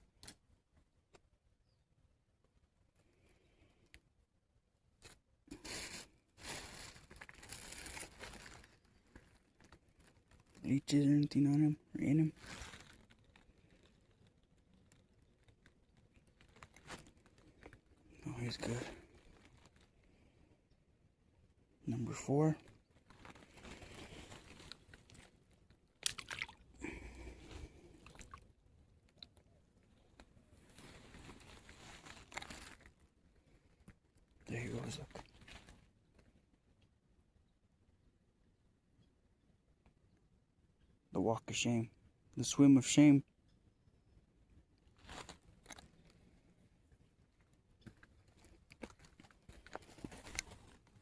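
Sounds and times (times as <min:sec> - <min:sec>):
rustling and crunching handling noise: 0:04.8 - 0:36.7, 0:44.7 - 0:51.0.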